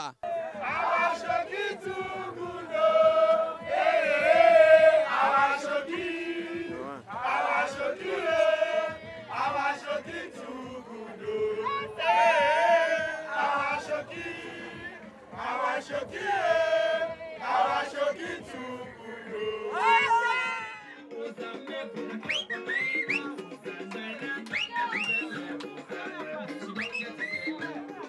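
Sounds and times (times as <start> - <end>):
men chanting together: 0.2 - 21.9.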